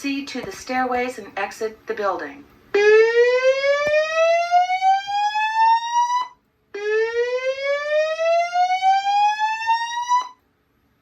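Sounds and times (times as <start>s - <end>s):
fire alarm whoop tone: 2.8s - 10.4s.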